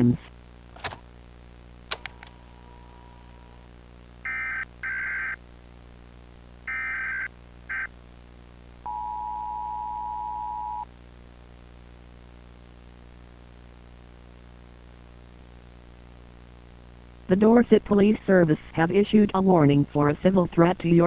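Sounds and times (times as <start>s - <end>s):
two-tone attention signal: 8.9s - 10.8s.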